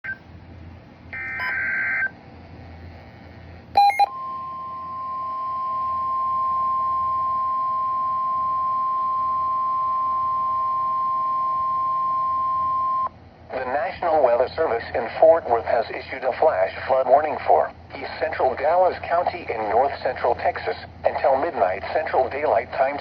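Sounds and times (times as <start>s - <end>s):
warbling digital header tones: 1.2s - 2.1s
brief beeps: 3.8s - 10.4s
steady single-pitched attention tone: 3.8s - 13.1s.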